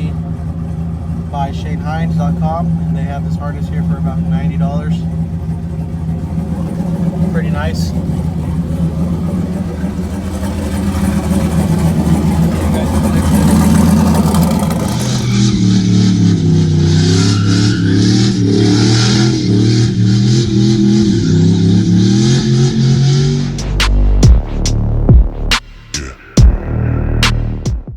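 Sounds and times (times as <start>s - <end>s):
truck engine idling: 0.0s - 27.8s
wavering pitched tones: 6.2s - 27.7s.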